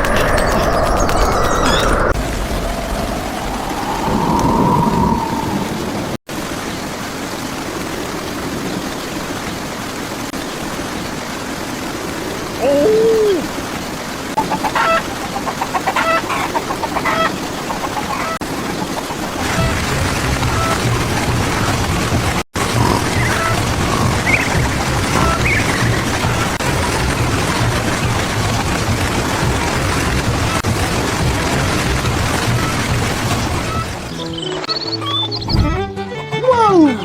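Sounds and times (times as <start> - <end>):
steady rain: 0.0 - 34.4
chicken call: 14.4 - 19.8
chickens clucking: 14.4 - 22.0, 22.6 - 28.8.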